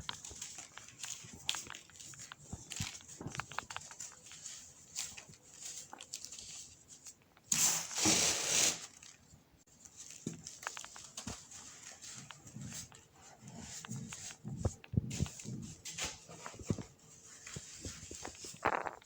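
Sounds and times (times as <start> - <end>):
baking soda crumbles crunching: 17.5 - 19.0.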